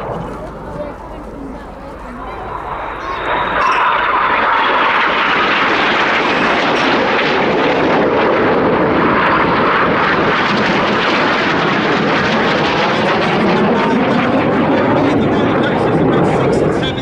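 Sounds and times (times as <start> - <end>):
jet engine roar: 0.0 - 17.0.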